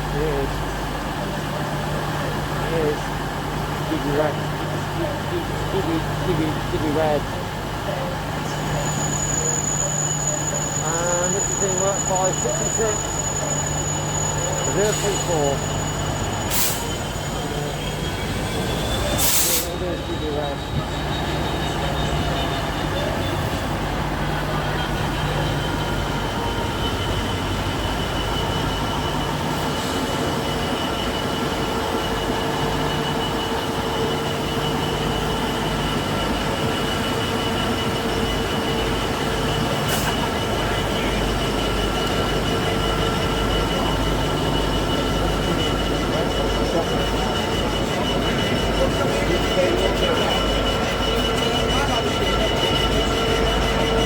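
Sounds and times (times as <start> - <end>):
train wagons rumbling: 0.0 - 54.0
high-pitched wheel squeal: 8.4 - 23.6, 24.4 - 54.0.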